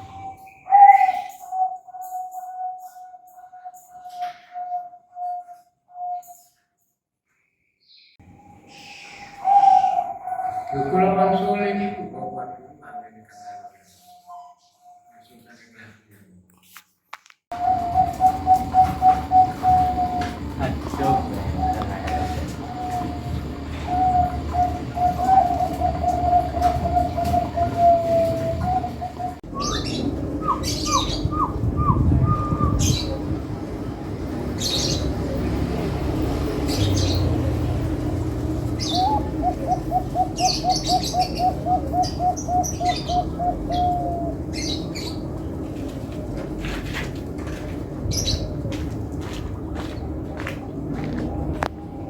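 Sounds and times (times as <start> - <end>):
bird trilling: 0.0 - 6.5, 8.6 - 15.3, 17.5 - 33.4, 38.6 - 45.2
high bird chirps: 0.0 - 6.6, 21.2 - 33.2.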